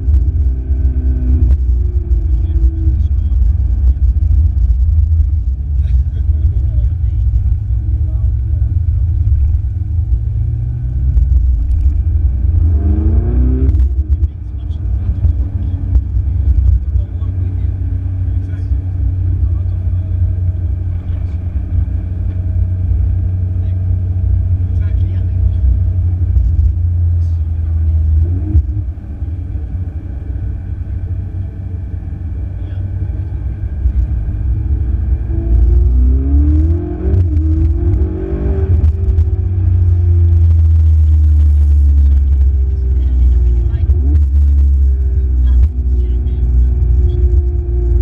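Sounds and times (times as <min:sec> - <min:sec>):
car engine rumble from inside cabin: 0:00.0 - 0:48.0.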